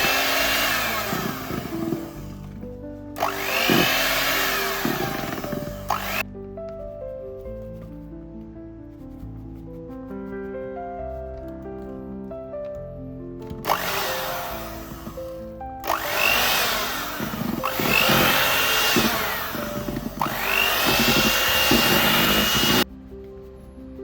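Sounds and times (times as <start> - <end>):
electric hand mixer whine: 0.0 - 2.6, 3.2 - 6.2, 13.6 - 22.9
background music: 0.0 - 24.0.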